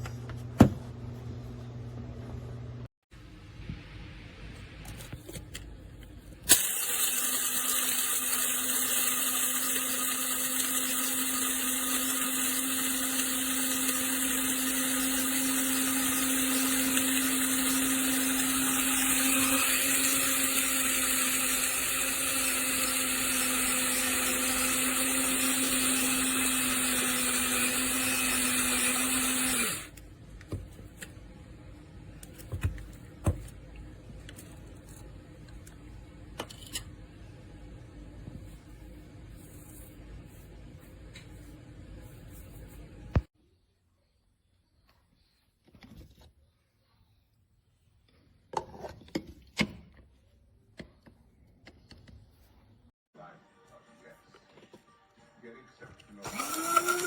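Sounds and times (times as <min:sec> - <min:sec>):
coffee grinder whirring: 0:06.4 - 0:30.0, 0:56.2 - 0:57.0.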